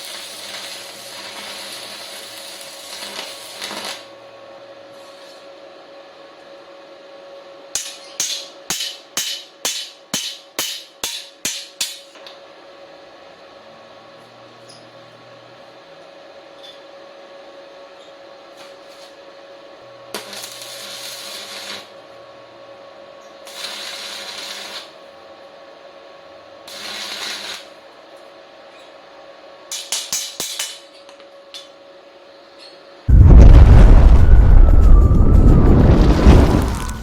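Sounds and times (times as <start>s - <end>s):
welding arc crackling hiss: 0.0s - 4.1s, 20.2s - 21.9s, 23.4s - 25.0s, 26.6s - 27.8s
faint hum: 33.1s - 37.0s.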